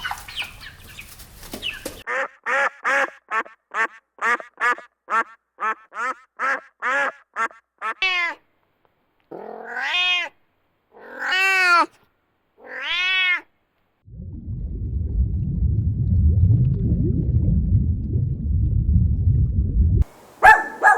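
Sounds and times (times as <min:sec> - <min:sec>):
duck quacking: 0:02.0 - 0:08.0, 0:20.4 - 0:20.9
cat meowing: 0:08.0 - 0:08.4, 0:09.3 - 0:10.4, 0:11.0 - 0:11.9, 0:12.6 - 0:13.5.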